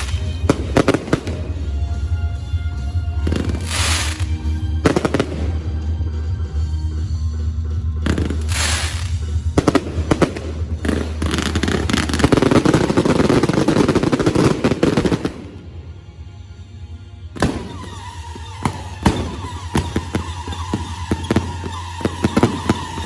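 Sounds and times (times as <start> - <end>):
firework bangs: 0.0 - 6.0, 8.0 - 15.9, 17.4 - 23.0
firework crackling: 0.0 - 6.0, 8.0 - 15.8, 17.4 - 23.0.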